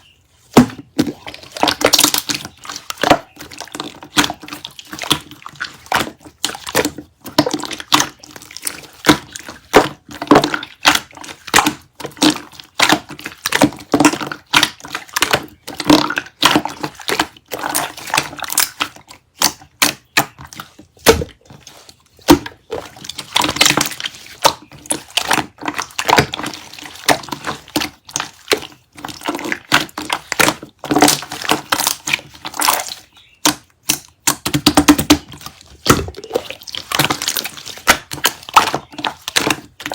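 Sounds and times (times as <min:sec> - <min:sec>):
slime squelching: 0:00.0 - 0:39.9.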